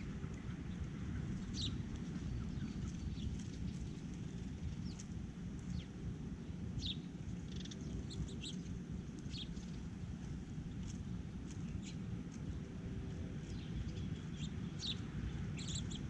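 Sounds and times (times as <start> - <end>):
low outdoor rumble: 0.0 - 16.0
small birds chirping: 0.0 - 16.0.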